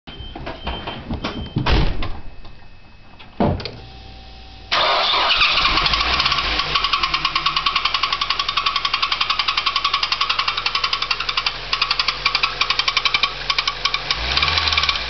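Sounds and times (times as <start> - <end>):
car engine knocking clatter: 5.8 - 15.0.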